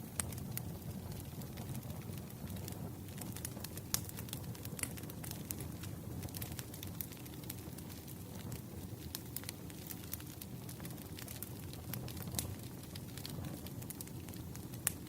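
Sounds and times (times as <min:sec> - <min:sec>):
firewood crackling and popping: 0:00.0 - 0:15.0
low fire noise: 0:00.0 - 0:15.0.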